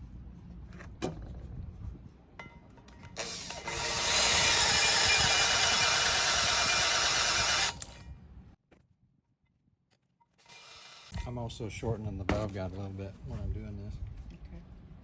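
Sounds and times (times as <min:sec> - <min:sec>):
metal cutting grind with ringing: 0:02.4 - 0:08.2.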